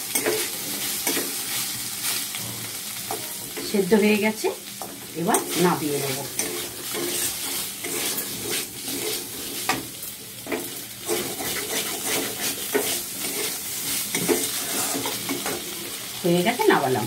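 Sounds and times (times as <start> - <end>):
meat sizzling in a frying pan: 0.0 - 17.0
spatula scraping pan: 4.9 - 16.0.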